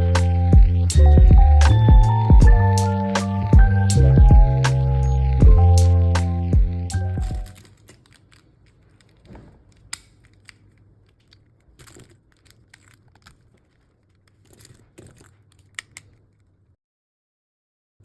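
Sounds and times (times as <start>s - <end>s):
plastic pieces clicking: 7.1s - 16.6s
cloth rustling: 7.2s - 16.7s.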